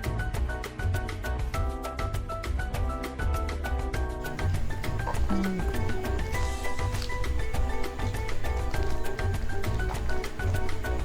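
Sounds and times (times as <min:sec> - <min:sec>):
low bass thumps: 0:04.2 - 0:11.0.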